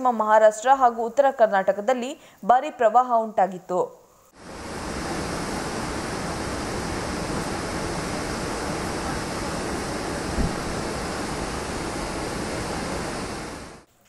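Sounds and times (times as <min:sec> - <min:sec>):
heavy water rushing: 0:04.4 - 0:13.9
low thump: 0:10.3 - 0:10.7.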